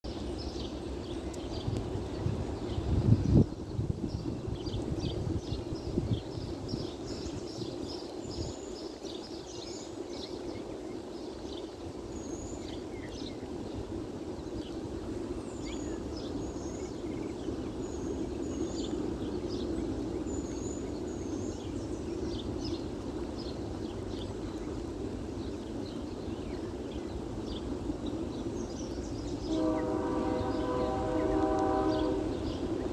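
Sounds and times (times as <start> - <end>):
small birds chirping: 0.1 - 32.9.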